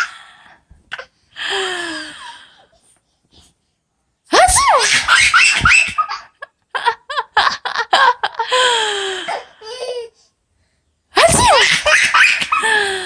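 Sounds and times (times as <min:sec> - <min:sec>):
baby laughing: 0:04.6 - 0:06.4, 0:11.2 - 0:12.7
woman sneezing: 0:11.2 - 0:12.0.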